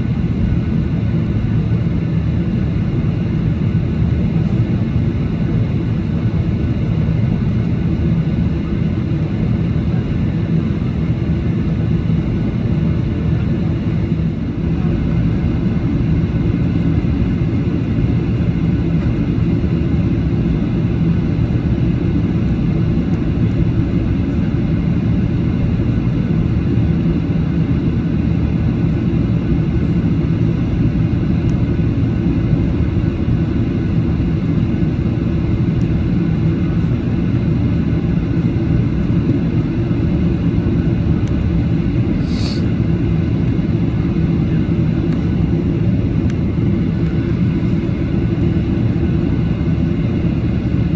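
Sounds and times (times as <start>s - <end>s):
jet engines running: 0.0s - 50.9s
brief high click: 42.2s - 42.7s.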